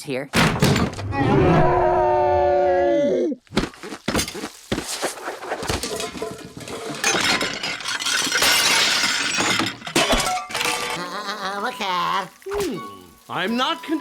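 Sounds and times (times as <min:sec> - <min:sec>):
pottery smashing: 0:03.5 - 0:11.0
shards clattering: 0:05.7 - 0:11.0.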